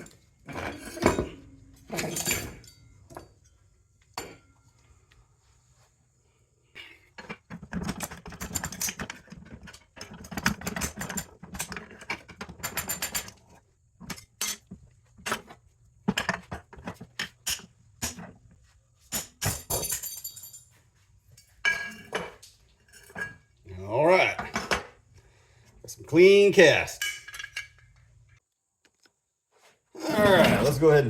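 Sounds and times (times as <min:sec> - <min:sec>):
scrap metal parts clattering: 0:00.0 - 0:03.4, 0:07.2 - 0:18.4, 0:19.1 - 0:20.8, 0:21.4 - 0:23.5.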